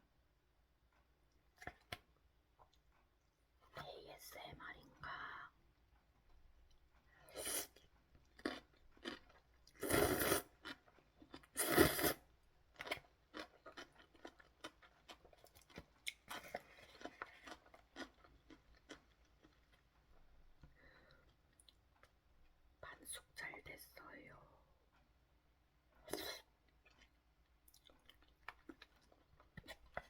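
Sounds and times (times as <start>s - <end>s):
person chewing noodles: 6.7s - 20.0s, 25.9s - 30.0s.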